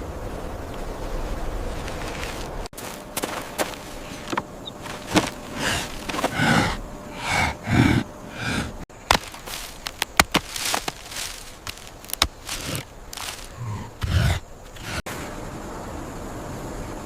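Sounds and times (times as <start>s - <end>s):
breathy grunts or hums: 5.0s - 9.4s, 12.5s - 15.0s.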